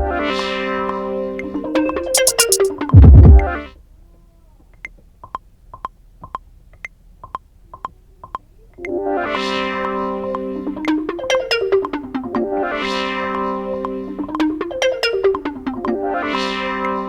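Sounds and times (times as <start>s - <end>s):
high plucked synth notes: 0.0s - 0.7s, 1.6s - 3.7s, 10.3s - 17.0s
sustained synth chord: 0.0s - 2.3s.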